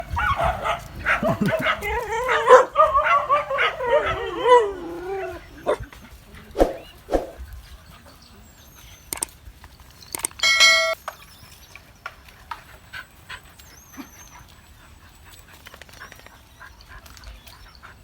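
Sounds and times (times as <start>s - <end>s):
dog barking: 0.0s - 5.8s
dogs yelping: 0.0s - 7.4s
sharp clicks: 9.1s - 9.4s, 10.1s - 10.4s.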